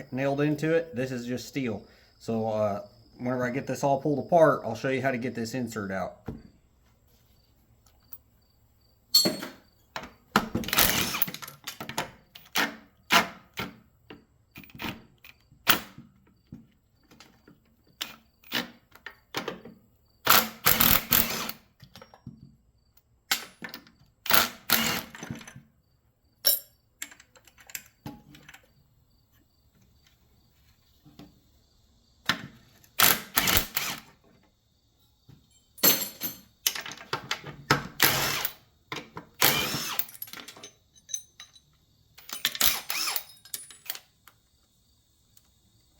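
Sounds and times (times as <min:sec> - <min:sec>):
metal parts clinking: 0:09.1 - 0:09.6, 0:26.4 - 0:28.7, 0:35.5 - 0:37.2, 0:39.5 - 0:44.1.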